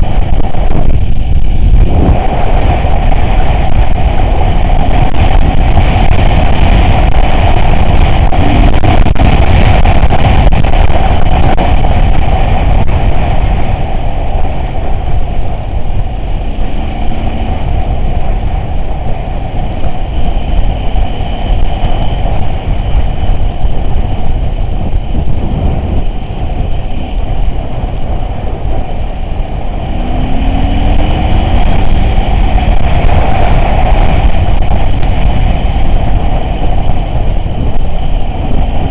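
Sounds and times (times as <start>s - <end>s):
vehicle engine running: 0.0s - 38.9s.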